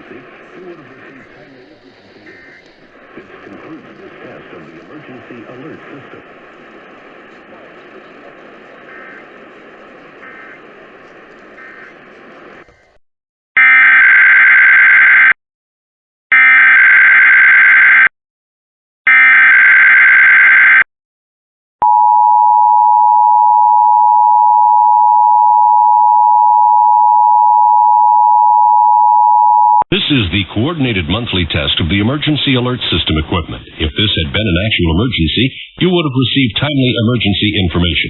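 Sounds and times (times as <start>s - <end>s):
data bursts: 0.0s - 13.0s
faint background audio: 0.0s - 13.0s.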